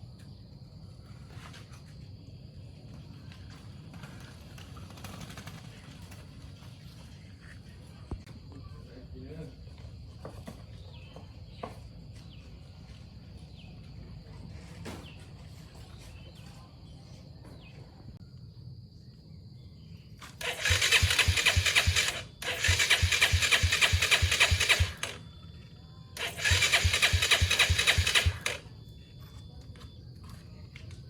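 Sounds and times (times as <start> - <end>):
motorcycle engine cranking: 20.3 - 25.2, 26.2 - 28.6.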